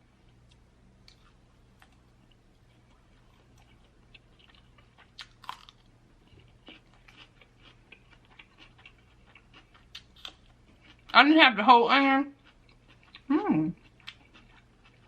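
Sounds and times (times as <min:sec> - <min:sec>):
person biting and chewing food: 0:00.3 - 0:11.1, 0:12.4 - 0:15.0.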